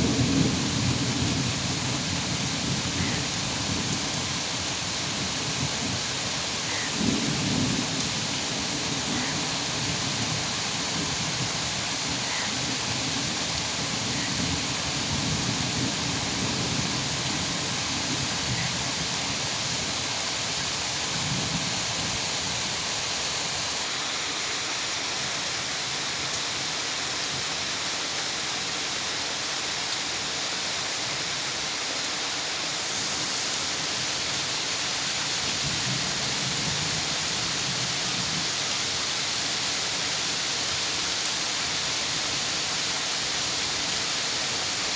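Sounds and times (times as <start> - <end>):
dense rain hiss: 0.0 - 44.9.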